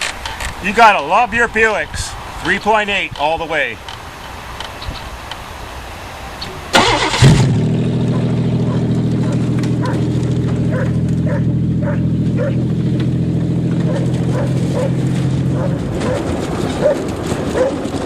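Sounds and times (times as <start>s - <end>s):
starter cranking: 6.8s - 7.6s
car engine running: 6.8s - 18.0s.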